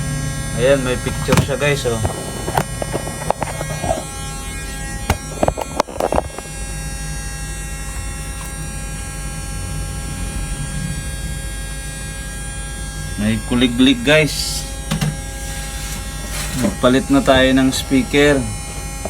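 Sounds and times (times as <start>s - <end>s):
speaker electrical hum and buzz: 0.0s - 19.0s.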